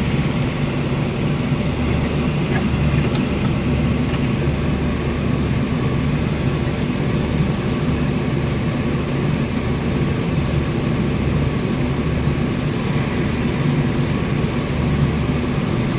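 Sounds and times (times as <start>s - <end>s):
car engine idling: 0.0s - 7.0s.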